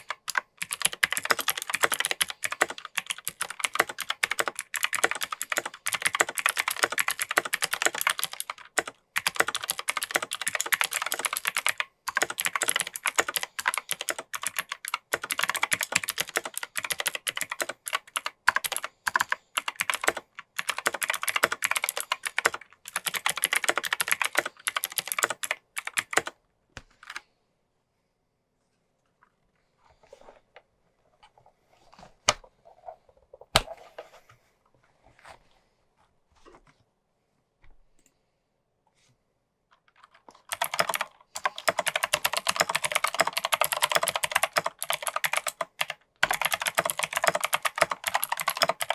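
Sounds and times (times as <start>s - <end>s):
clicky mechanical keyboard typing: 0.0s - 26.4s, 39.8s - 48.9s.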